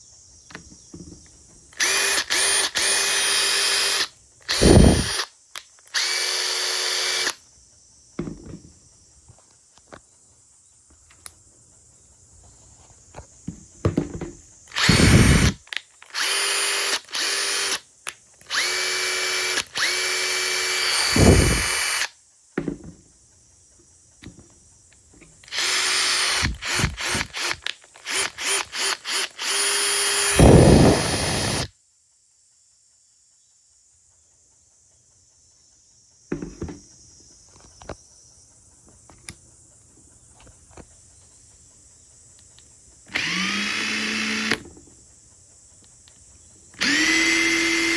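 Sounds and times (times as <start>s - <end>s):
impact driver hammering: 1.8s - 5.3s, 13.9s - 15.6s, 18.5s - 23.0s, 25.5s - 31.7s, 43.1s - 44.8s, 46.8s - 47.9s
impact driver motor whining: 1.8s - 5.3s, 5.9s - 7.4s, 13.9s - 17.8s, 18.5s - 22.1s, 25.4s - 31.7s, 43.1s - 44.7s, 46.8s - 47.9s
faint handling knocks: 8.2s - 10.1s, 12.4s - 14.6s, 22.6s - 23.2s, 36.3s - 38.0s.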